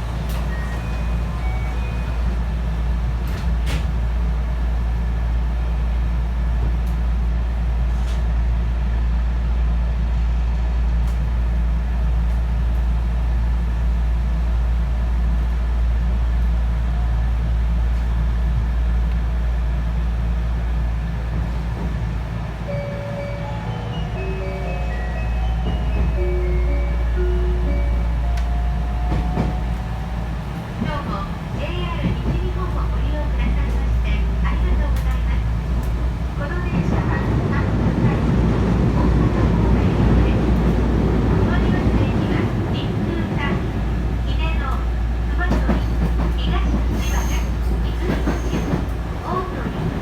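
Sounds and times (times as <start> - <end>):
train car hum: 0.0 - 50.0
electronic chime melody: 22.7 - 28.7.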